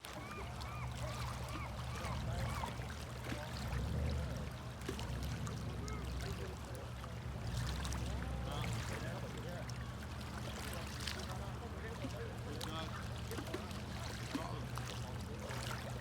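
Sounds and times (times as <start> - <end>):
birds calling: 0.1 - 2.9.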